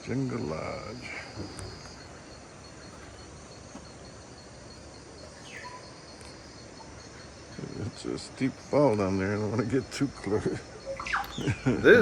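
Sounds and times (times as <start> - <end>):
insect trill: 0.0 - 12.0
steady background hiss: 0.0 - 12.0
falling bird call: 10.8 - 12.0.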